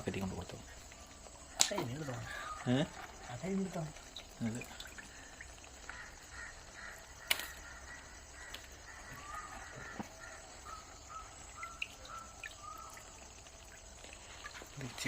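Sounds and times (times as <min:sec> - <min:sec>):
outdoor background noise: 0:00.0 - 0:15.0
sharp click: 0:07.2 - 0:07.6.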